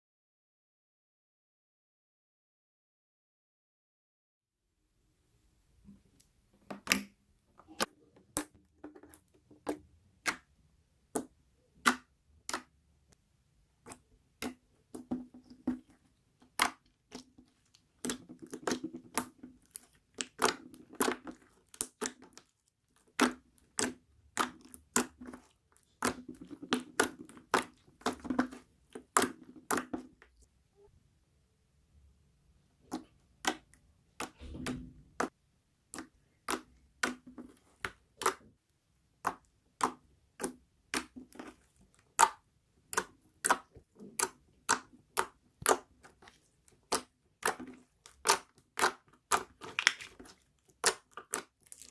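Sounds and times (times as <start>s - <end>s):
slime squished by hand: 13.8s - 30.4s, 35.9s - 38.5s, 39.2s - 51.9s
slime clicks pops and crackling: 46.9s - 50.2s.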